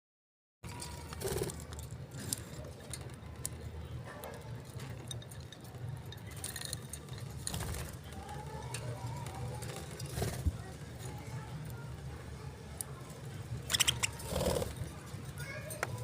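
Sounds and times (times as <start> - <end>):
small clicks and clinks: 0.7 - 7.6
parrots chirping faintly: 8.1 - 15.8.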